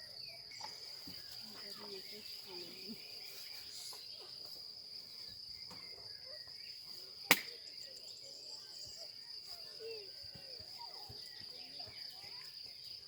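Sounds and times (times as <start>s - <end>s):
sharp click: 7.3s - 7.5s.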